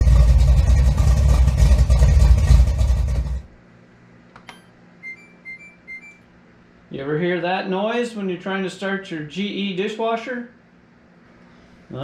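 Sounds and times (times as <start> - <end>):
rough mechanical rumble: 0.0 - 3.6
dishwasher alert beep: 4.5 - 6.2.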